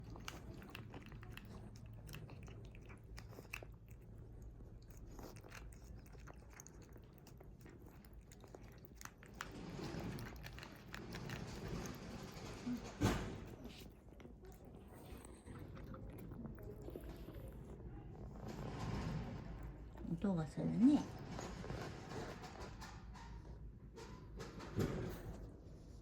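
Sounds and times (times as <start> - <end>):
cat crunching dry kibble: 0.0 - 20.2.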